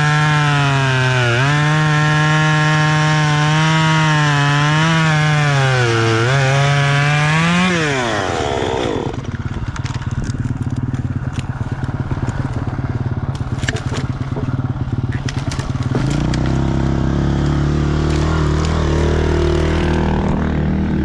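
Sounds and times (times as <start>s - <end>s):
dirt bike engine: 4.5s - 21.0s
knocks and scrapes from trail: 9.1s - 20.6s.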